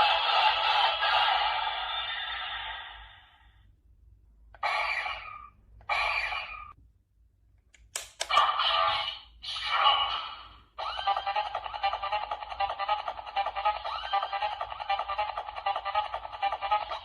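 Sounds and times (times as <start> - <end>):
toy electronic sound effects: 4.6 - 6.8, 8.3 - 17.0.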